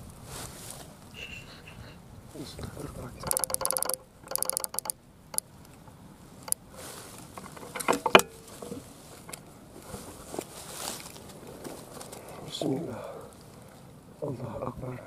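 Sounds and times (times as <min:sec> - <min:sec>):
air rifle mechanical clicks: 0:03.2 - 0:05.8.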